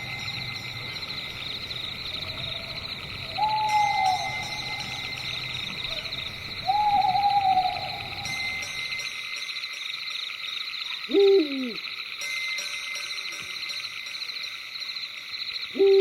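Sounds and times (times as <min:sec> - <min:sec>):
owl hooting: 0:00.0 - 0:08.6, 0:11.1 - 0:11.8, 0:15.8 - 0:16.0
night insects chorus: 0:00.0 - 0:16.0.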